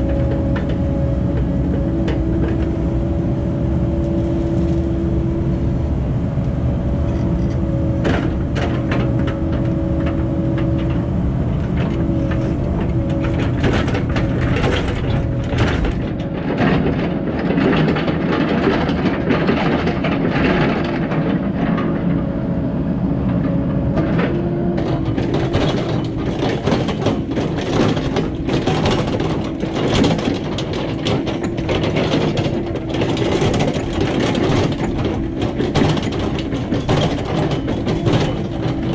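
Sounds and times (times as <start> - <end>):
excavator diesel engine: 0.0 - 38.9
metal and gravel clanking: 7.0 - 22.2, 23.9 - 38.9.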